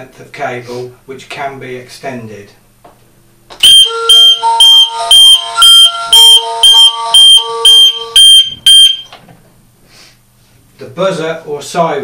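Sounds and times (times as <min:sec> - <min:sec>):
alarm siren beeping: 0:03.6 - 0:09.1.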